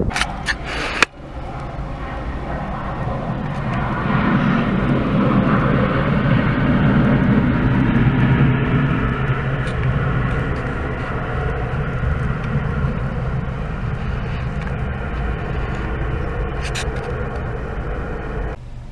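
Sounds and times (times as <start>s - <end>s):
sharp clicks: 0.0s - 1.2s
jet airliner engine noise: 0.0s - 18.9s.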